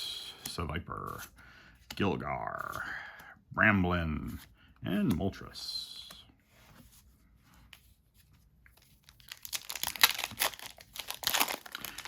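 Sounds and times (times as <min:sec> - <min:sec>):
foil wrapper crinkling and tearing: 0:09.0 - 0:12.0.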